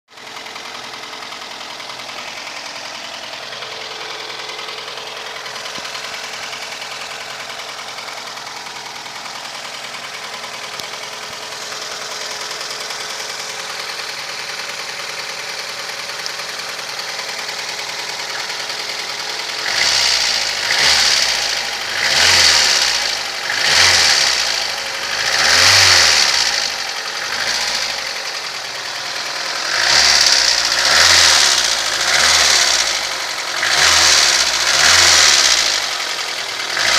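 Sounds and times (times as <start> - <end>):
car engine idling with ticking knock: 0.1 - 36.9
engine revving in throttle blips: 17.4 - 36.9.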